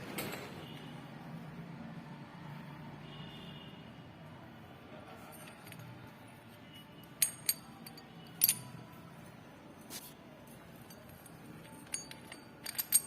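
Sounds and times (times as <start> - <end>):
metal tools clinking: 5.2 - 6.1, 6.8 - 9.0, 10.6 - 13.0.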